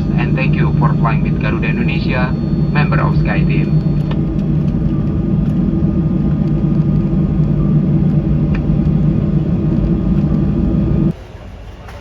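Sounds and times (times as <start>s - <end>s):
jet engines and cabin air drone: 0.0s - 12.0s.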